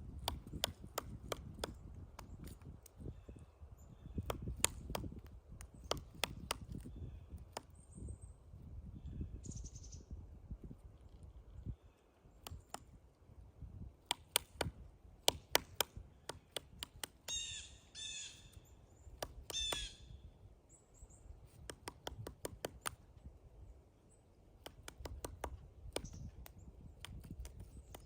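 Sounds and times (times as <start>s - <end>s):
woodpecker knocking on wood: 0.1s - 2.7s, 4.1s - 7.7s, 12.4s - 13.0s, 14.0s - 18.3s, 19.1s - 20.1s, 21.4s - 23.1s, 24.6s - 28.0s
bird calls: 16.1s - 21.6s.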